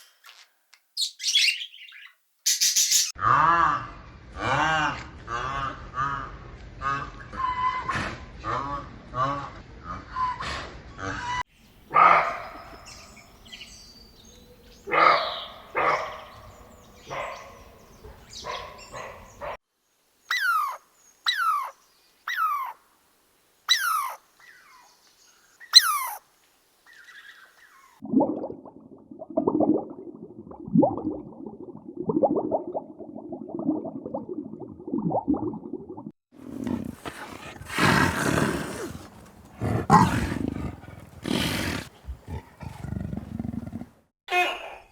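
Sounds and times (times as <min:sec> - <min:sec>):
animal roar: 0:36.4 - 0:44.0.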